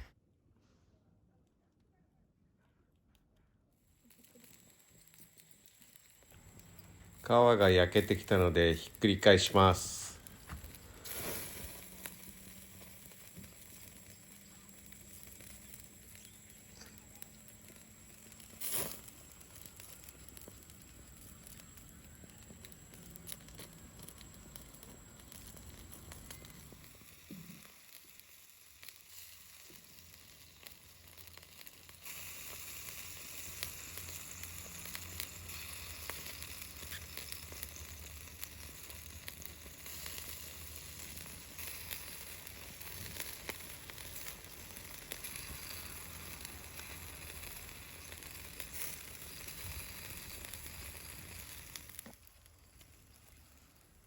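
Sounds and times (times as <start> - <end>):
chicken wings sizzling on a grill: 3.9 - 54.0
fat spitting in crackling pops: 18.4 - 20.8.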